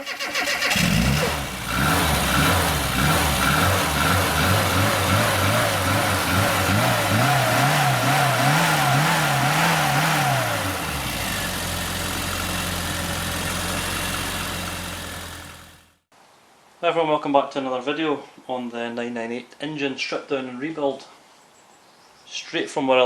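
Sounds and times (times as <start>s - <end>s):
car engine revving and idling: 0.6s - 16.0s.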